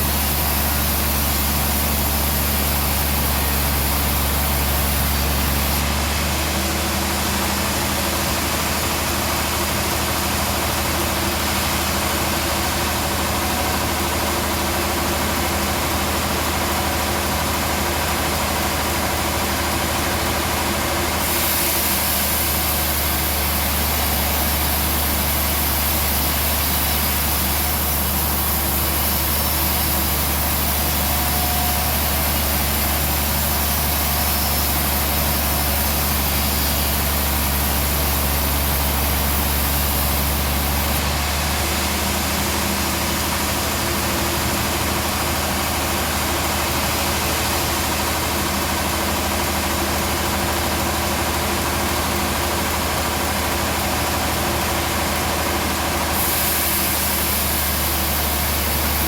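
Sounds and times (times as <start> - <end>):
high hiss: 0.0 - 5.8, 21.2 - 48.9, 56.0 - 59.0
band saw humming: 0.0 - 6.0, 20.8 - 49.6.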